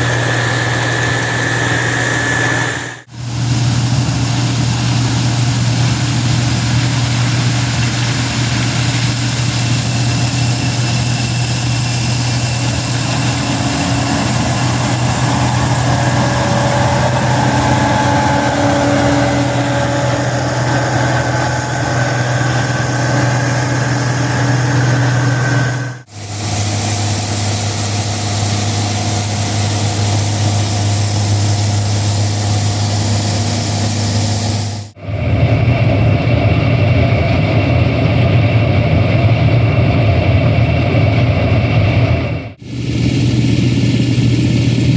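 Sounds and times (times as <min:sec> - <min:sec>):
faint whines: 0:00.0 - 0:03.1
diesel engine droning: 0:00.0 - 0:44.9.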